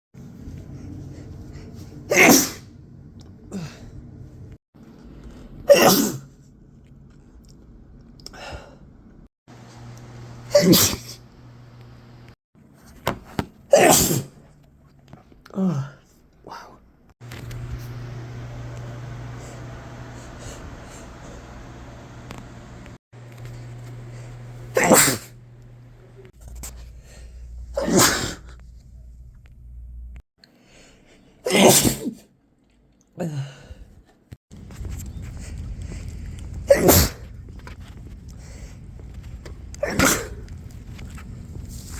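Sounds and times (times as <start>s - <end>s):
man sneezing: 2.1s - 2.6s, 5.7s - 6.2s, 10.5s - 11.2s, 13.7s - 14.3s, 24.7s - 25.3s, 27.7s - 28.5s, 31.5s - 32.2s, 36.7s - 37.2s, 39.8s - 40.4s.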